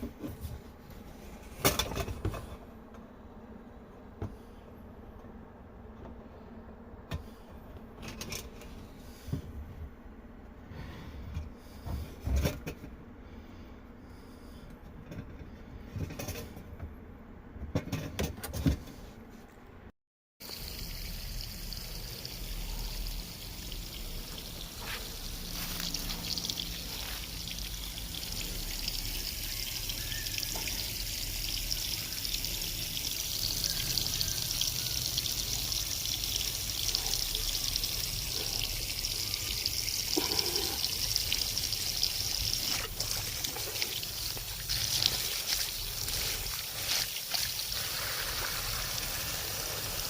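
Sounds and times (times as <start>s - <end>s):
water pouring through drain pipes: 20.4s - 50.0s.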